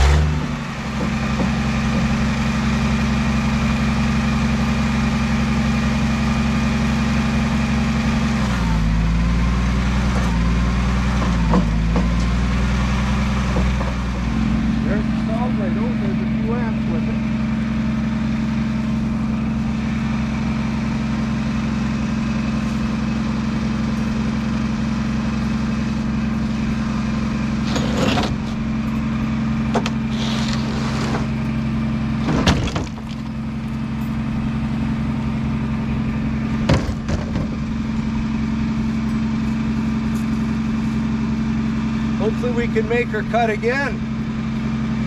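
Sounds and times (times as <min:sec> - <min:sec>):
engine idling: 0:00.0 - 0:45.0
short knocks and clanks: 0:00.9 - 0:02.4, 0:11.2 - 0:12.4, 0:13.4 - 0:14.2, 0:27.6 - 0:29.0, 0:29.7 - 0:31.4, 0:32.2 - 0:33.4, 0:36.6 - 0:37.7.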